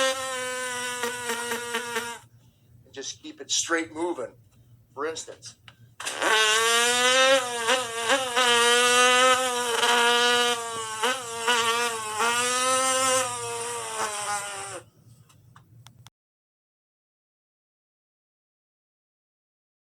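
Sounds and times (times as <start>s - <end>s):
man imitating engine with voice: 5.0s - 14.8s.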